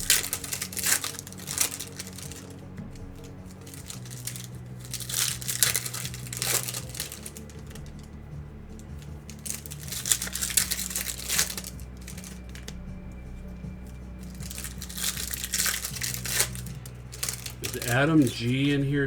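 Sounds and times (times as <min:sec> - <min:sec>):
faint background music: 0:00.0 - 0:19.0
foil wrappers crinkling and tearing: 0:00.0 - 0:19.0.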